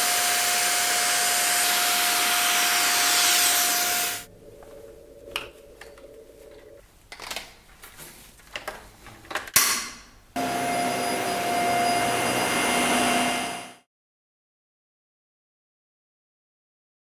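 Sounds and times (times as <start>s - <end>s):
vacuum cleaner running with whine: 0.0s - 4.3s, 10.4s - 13.8s.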